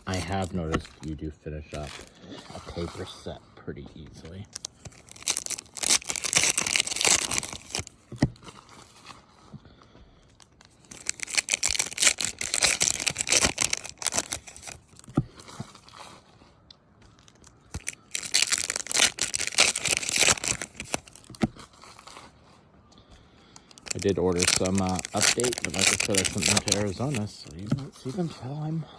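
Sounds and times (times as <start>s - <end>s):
wrappers tearing and crinkling: 0.0s - 3.1s, 4.5s - 8.0s, 10.4s - 16.4s, 17.1s - 22.4s, 23.7s - 27.7s.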